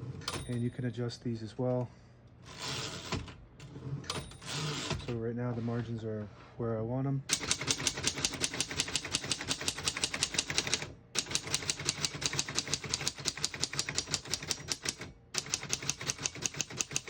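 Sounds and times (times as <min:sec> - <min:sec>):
typewriter typing: 0:02.5 - 0:03.4, 0:04.1 - 0:05.1, 0:07.3 - 0:17.0.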